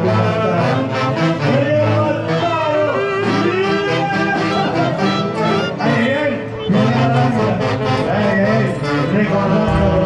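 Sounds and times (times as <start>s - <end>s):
wind instruments melody: 0.0s - 10.0s
steady beat: 9.6s - 10.0s.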